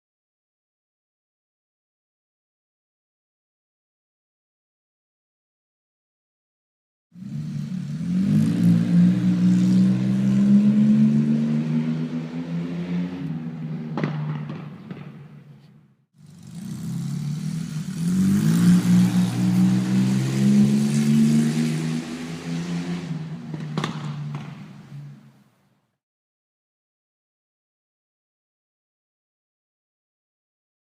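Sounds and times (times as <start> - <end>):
car engine accelerating: 7.2 - 15.4, 16.2 - 25.5
backfire pop: 13.9 - 15.5, 23.5 - 24.7.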